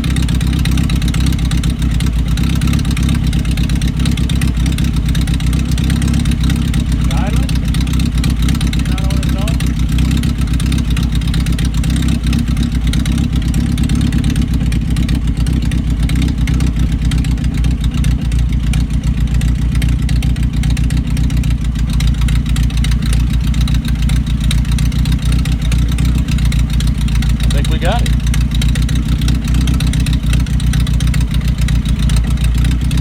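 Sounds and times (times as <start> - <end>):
car engine running: 0.0 - 33.0.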